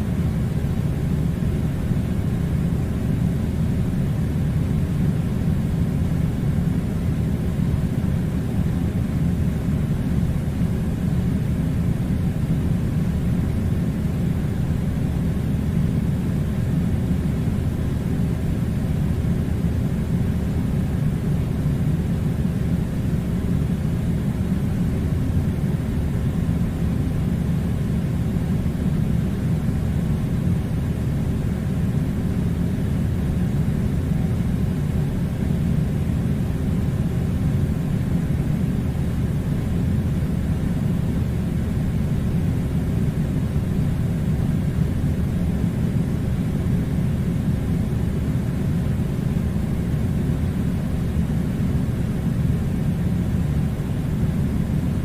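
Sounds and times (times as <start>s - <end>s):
air conditioner running: 0.0s - 55.0s.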